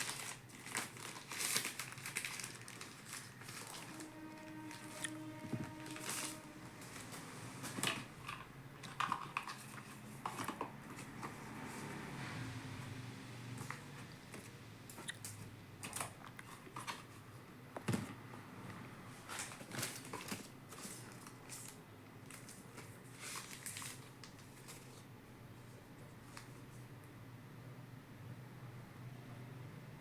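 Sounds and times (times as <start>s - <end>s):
cardboard box packaging rustling: 0.0s - 12.0s, 19.2s - 25.1s.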